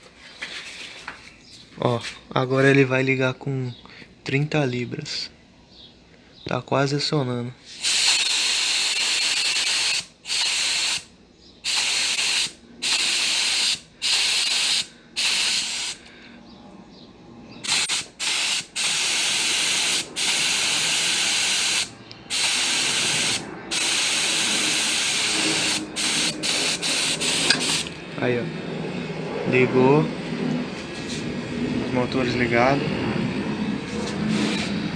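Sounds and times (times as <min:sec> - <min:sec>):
compressed air hissing from blow gun: 0:07.7 - 0:16.1, 0:17.6 - 0:28.0, 0:33.9 - 0:34.9.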